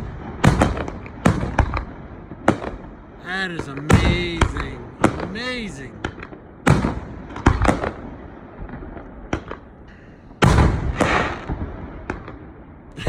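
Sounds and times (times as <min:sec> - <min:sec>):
fireworks exploding: 0:00.0 - 0:09.7, 0:10.4 - 0:12.6
fireworks crackling: 0:03.2 - 0:06.4.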